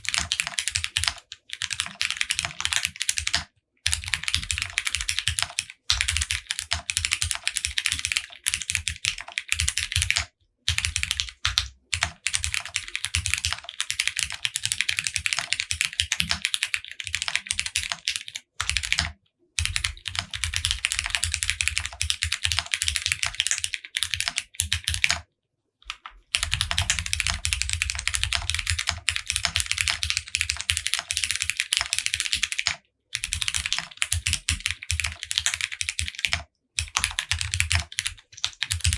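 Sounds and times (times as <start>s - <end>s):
fast mechanical keyboard typing: 0.0s - 25.2s, 25.9s - 38.9s.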